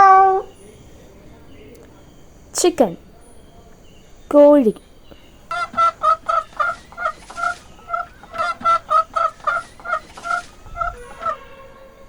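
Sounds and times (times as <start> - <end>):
chicken clucking: 5.5 - 11.4.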